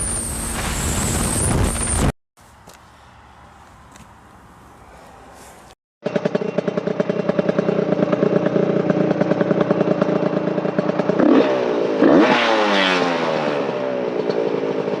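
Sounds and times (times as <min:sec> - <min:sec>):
vehicle engine running: 0:06.0 - 0:11.3.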